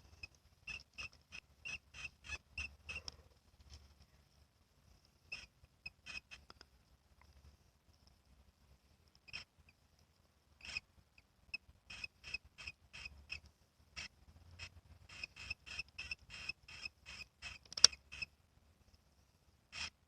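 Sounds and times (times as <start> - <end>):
hamster squeaky snores: 0.0 - 3.3, 5.3 - 6.5, 9.3 - 9.5, 10.6 - 10.9, 11.5 - 18.3, 19.7 - 20.0.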